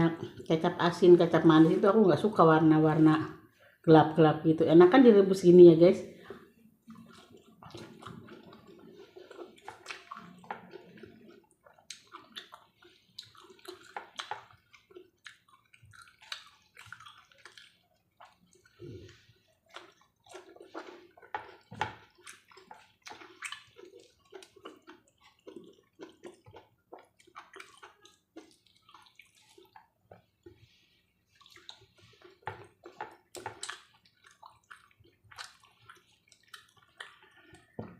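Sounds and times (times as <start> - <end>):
wet chewing: 6.2 - 37.8.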